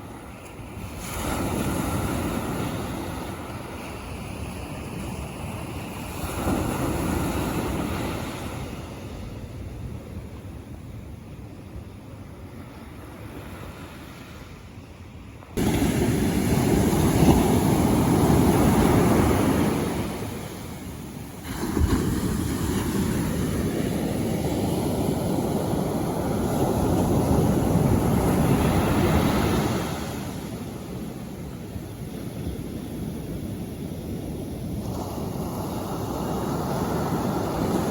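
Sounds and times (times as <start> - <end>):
sea waves rushing onto shore: 0.0 - 10.4, 15.4 - 37.9
wind buffeting microphone: 15.5 - 37.9.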